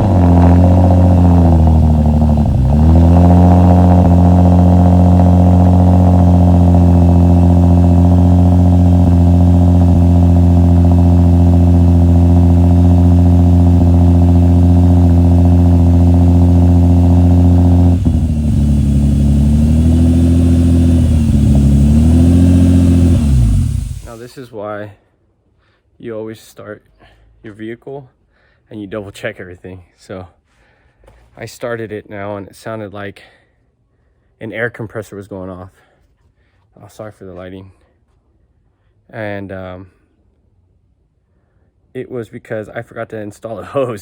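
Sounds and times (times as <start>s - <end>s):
car engine running loud: 0.0s - 24.2s.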